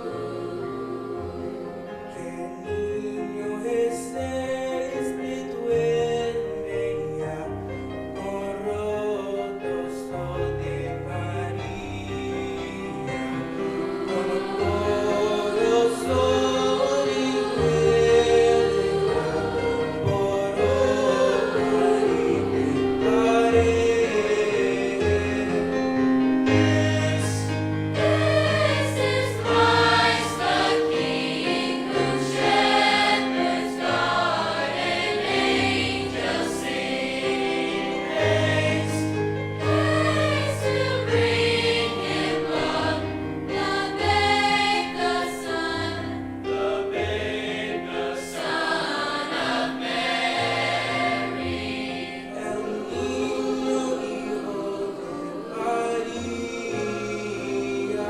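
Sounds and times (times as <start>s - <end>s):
choir singing in parts: 0.0s - 7.5s, 8.2s - 58.0s.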